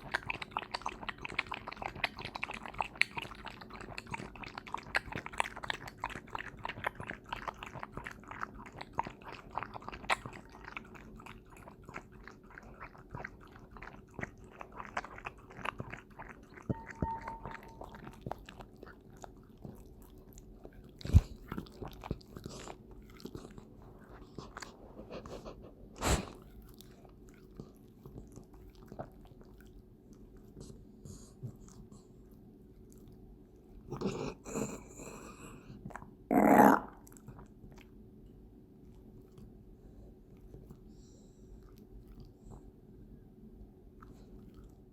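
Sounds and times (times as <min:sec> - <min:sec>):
dog lapping milk: 0:00.0 - 0:24.8.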